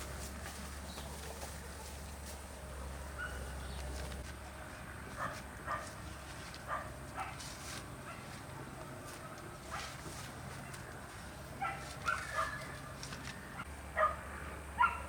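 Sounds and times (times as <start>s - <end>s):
small dog yipping: 11.6s - 13.0s.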